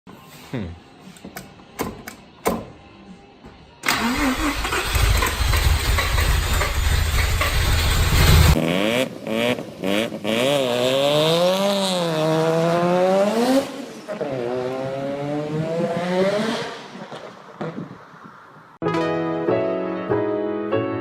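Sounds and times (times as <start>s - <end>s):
rotary engine revving: 3.9s - 17.1s.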